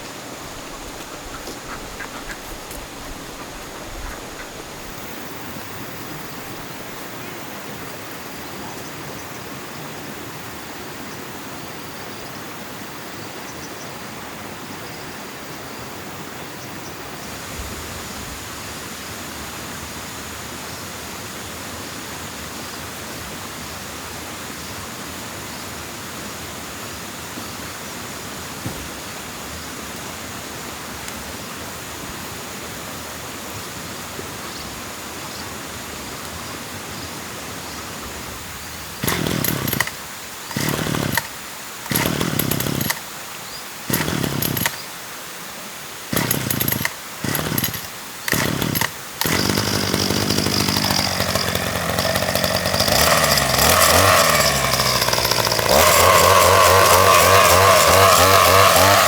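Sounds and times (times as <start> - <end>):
chainsaw engine revving: 0.0 - 7.6, 38.8 - 43.1, 43.9 - 44.8, 46.1 - 59.0.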